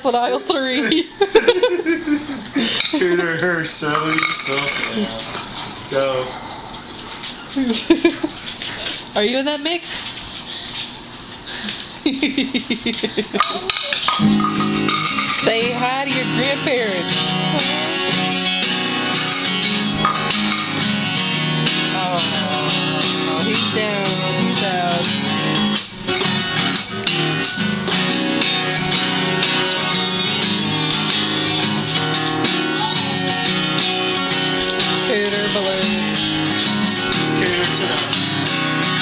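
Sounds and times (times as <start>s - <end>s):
strummed acoustic guitar music: 0.0s - 6.0s, 13.4s - 39.0s.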